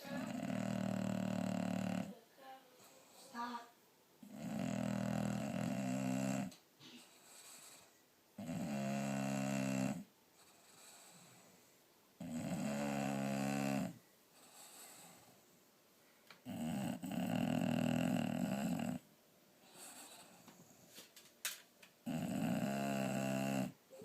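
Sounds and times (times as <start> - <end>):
dog snoring: 0.0 - 2.2, 4.2 - 11.5, 12.2 - 15.3, 16.4 - 19.0, 19.6 - 20.7, 22.0 - 24.0
faint breathing: 2.6 - 3.6, 10.4 - 11.9, 14.3 - 16.4, 19.6 - 21.1.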